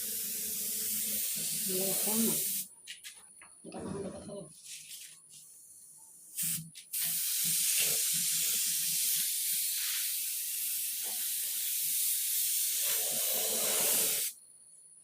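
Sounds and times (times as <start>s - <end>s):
paint spray gun hissing: 0.0s - 2.7s, 6.2s - 14.4s.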